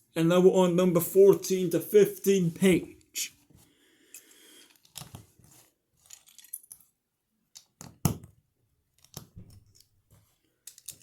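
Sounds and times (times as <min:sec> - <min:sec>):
plastic bricks clicking and clattering: 0:10.6 - 0:11.0.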